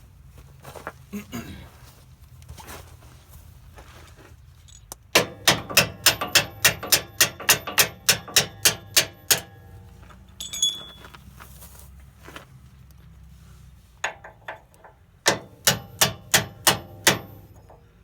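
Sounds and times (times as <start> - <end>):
hammer striking steel bolt: 5.2 - 9.8, 14.1 - 17.9
light metallic clink: 6.2 - 11.3.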